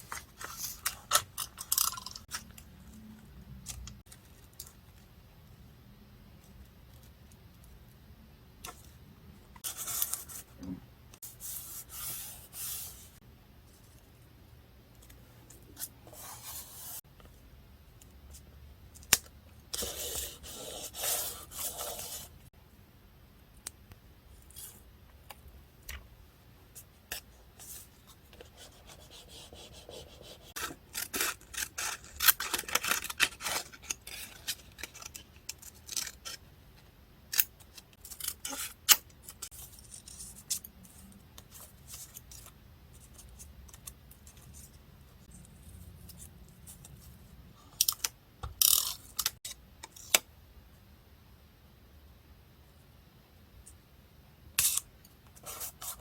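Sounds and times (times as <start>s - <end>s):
scissors cutting paper: 28.8s - 36.4s.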